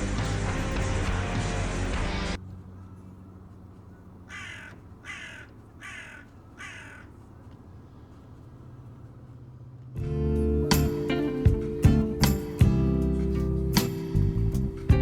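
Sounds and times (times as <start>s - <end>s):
music: 0.0s - 2.4s, 10.0s - 15.0s
crow cawing: 2.8s - 7.2s.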